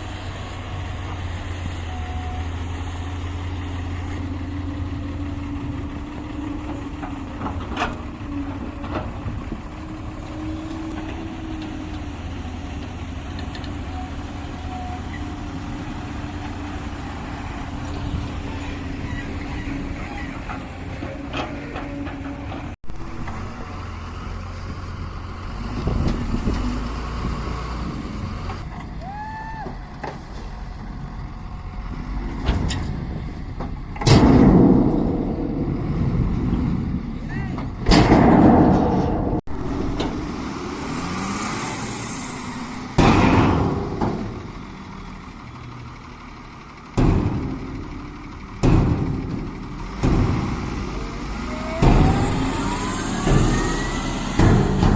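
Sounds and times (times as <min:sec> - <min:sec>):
excavator diesel engine: 0:00.0 - 0:54.9
heavy crash: 0:33.9 - 0:44.5, 0:48.6 - 0:54.9.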